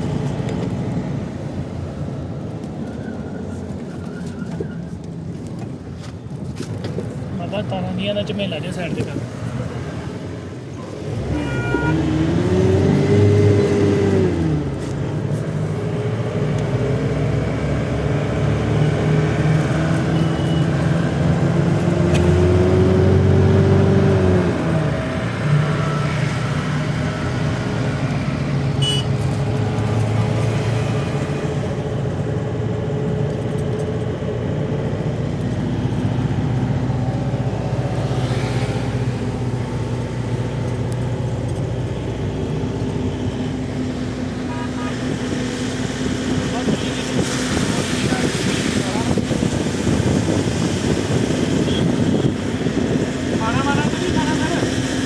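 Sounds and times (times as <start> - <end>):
road noise: 0.0 - 55.0
car engine running: 11.0 - 55.0.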